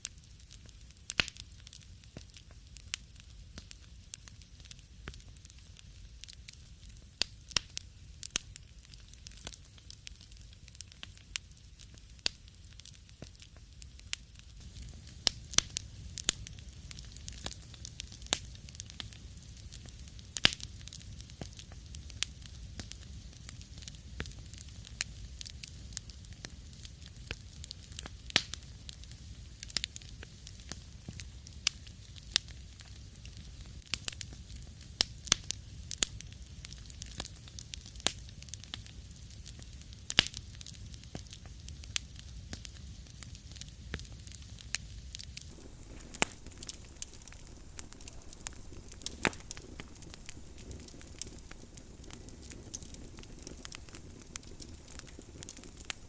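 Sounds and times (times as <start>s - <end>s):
wood fire crackling: 0.1s - 56.0s
low rumble of flames: 14.6s - 56.0s.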